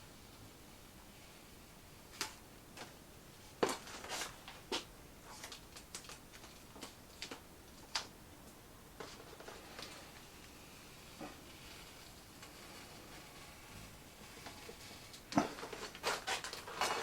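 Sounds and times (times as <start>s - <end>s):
masking tape peeling crackles: 9.2s - 17.0s.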